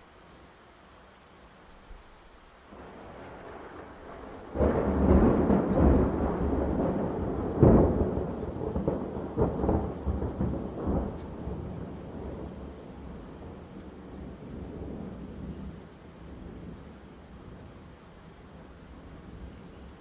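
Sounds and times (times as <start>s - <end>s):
thunder rumbling: 2.7s - 17.9s
sharp thunder crack: 2.9s - 11.6s.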